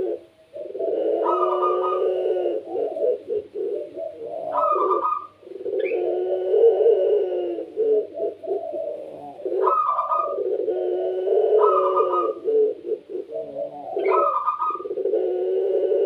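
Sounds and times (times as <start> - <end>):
dove cooing: 0.0 - 16.0.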